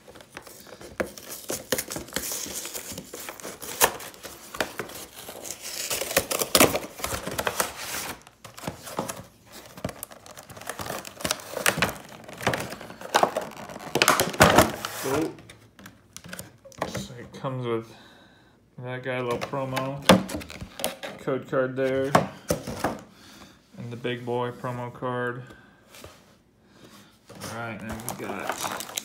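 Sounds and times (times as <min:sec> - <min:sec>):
plastic wrapping crinkling and tearing: 0:00.0 - 0:15.3, 0:27.7 - 0:29.0.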